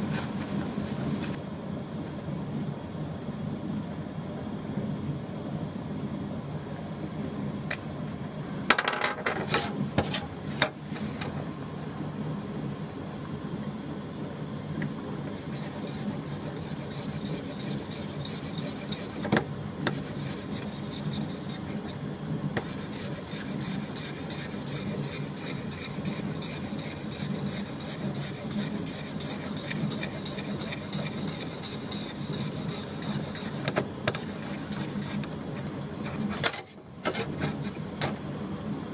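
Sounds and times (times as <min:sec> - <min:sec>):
printer motors humming: 0:15.3 - 0:22.0, 0:22.6 - 0:36.5
metal rod scraping copper board: 0:15.4 - 0:19.3, 0:22.6 - 0:35.3.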